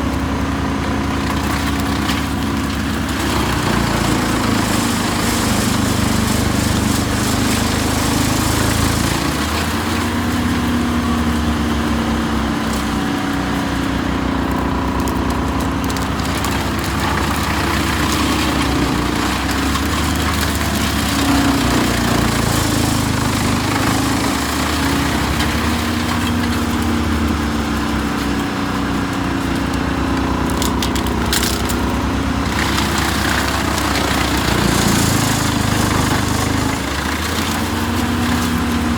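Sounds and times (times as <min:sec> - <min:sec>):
wood chipper engine running: 0:00.0 - 0:38.9
wood cracking: 0:00.0 - 0:38.9.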